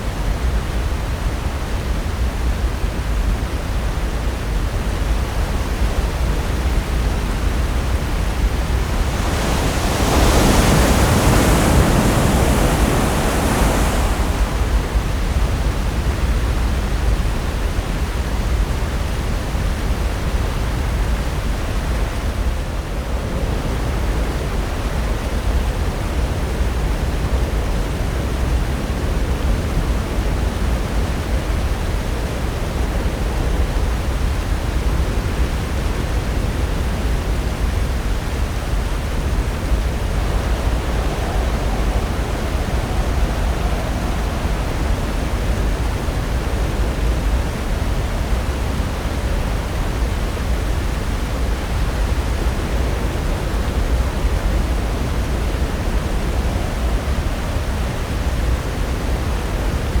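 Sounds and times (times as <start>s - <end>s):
ocean surf breaking: 5.9s - 17.1s, 32.8s - 60.0s.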